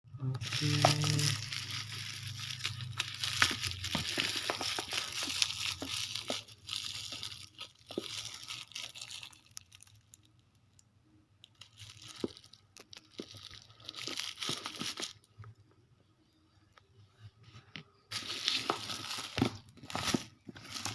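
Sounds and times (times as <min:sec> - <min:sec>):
packaging crinkling and tearing: 0:00.3 - 0:10.3, 0:11.4 - 0:15.3, 0:18.1 - 0:20.9.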